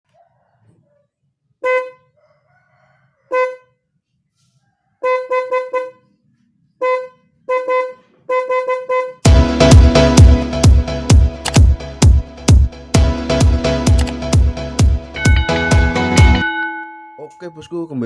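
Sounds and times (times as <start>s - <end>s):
electric horn toots: 1.6s - 2.0s, 5.0s - 6.0s, 6.8s - 10.1s.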